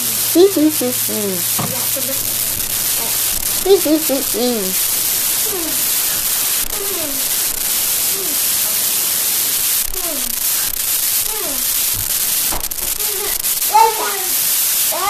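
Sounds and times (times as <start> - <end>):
faint voice: 0.0 - 2.3, 3.0 - 4.8, 5.4 - 5.8, 6.7 - 7.4, 8.0 - 9.1, 9.8 - 10.5, 11.2 - 11.7
static hiss: 0.0 - 15.0.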